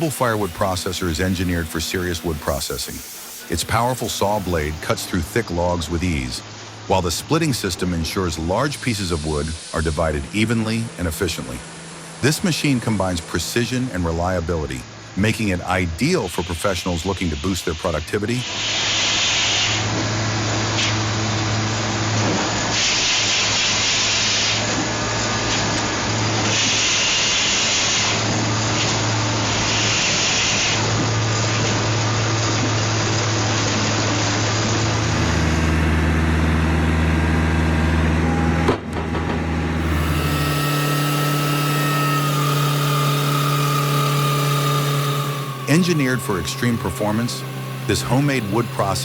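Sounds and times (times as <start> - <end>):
hissing noise bursts: 0.0 - 5.0, 39.8 - 49.0
firewood processor engine hum: 0.0 - 15.7, 18.6 - 49.0.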